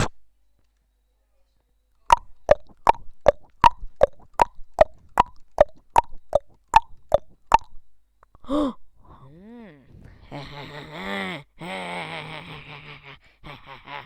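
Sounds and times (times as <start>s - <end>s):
cartoon hollow plops: 2.1s - 7.9s.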